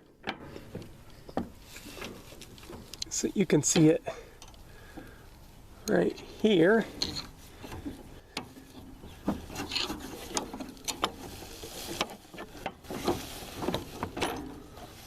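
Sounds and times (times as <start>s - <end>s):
metal parts clicking and scraping: 5.9s - 14.8s.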